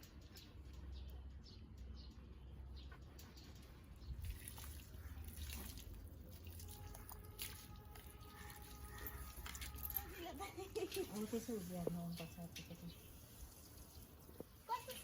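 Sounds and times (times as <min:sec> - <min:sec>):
water splashing and dripping: 0:03.6 - 0:15.0.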